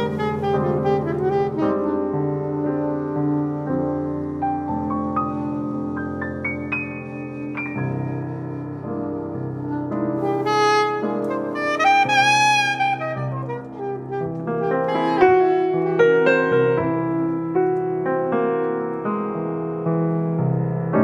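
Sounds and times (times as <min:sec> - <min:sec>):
instrumental music with piano: 0:00.0 - 0:21.0.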